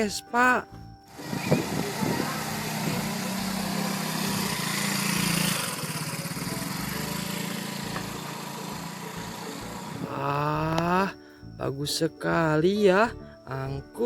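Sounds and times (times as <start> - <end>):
small scooter engine running: 1.1 - 10.2.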